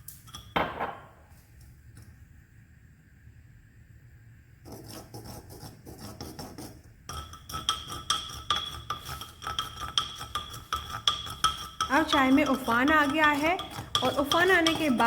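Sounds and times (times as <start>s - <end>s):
utensil scraping clay pot: 4.6s - 15.0s.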